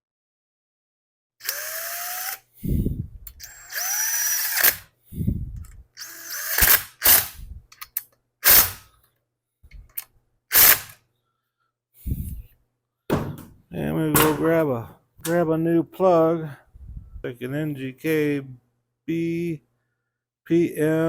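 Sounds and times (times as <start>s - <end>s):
power drill bursts: 1.4s - 2.4s, 3.4s - 4.9s, 6.0s - 7.3s, 8.4s - 8.8s, 10.5s - 11.0s
deep clunks: 13.1s - 15.5s.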